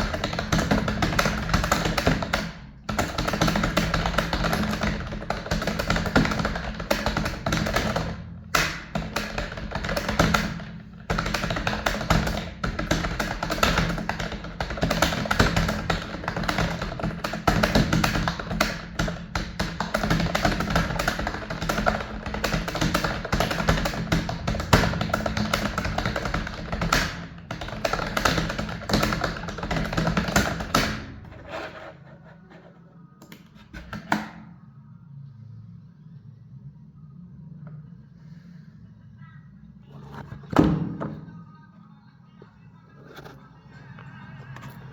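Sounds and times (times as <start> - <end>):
computer keyboard typing: 0.0 - 31.4.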